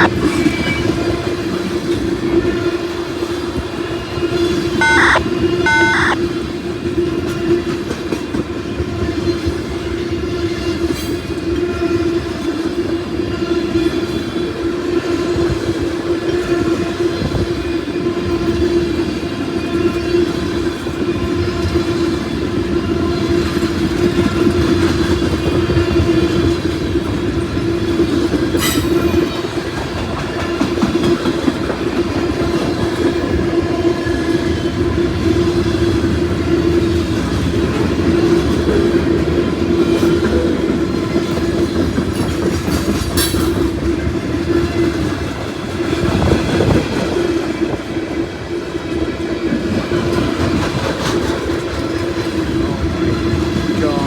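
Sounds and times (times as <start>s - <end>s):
train wheels clattering over rails: 20.7s - 53.7s.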